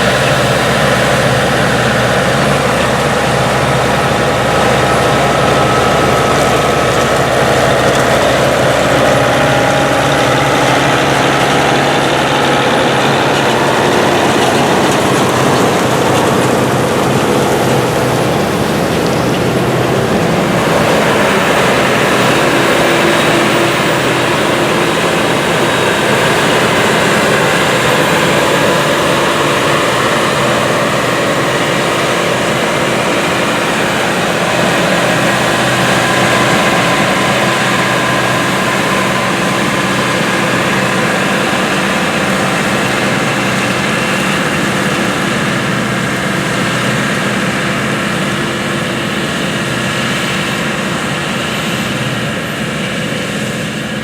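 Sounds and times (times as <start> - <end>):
diesel machinery engine hum: 0.0 - 54.0.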